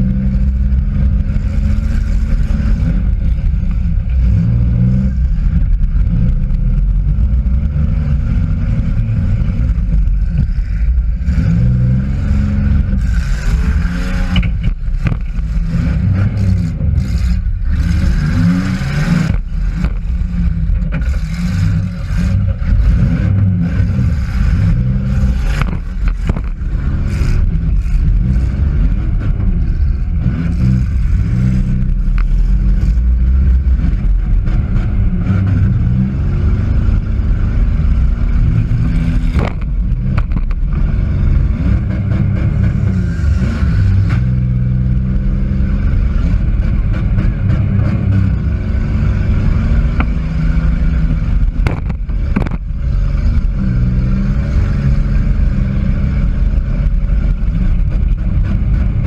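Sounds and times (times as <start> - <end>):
car engine revving: 0.0 - 59.0
metal scraping: 9.4 - 44.7.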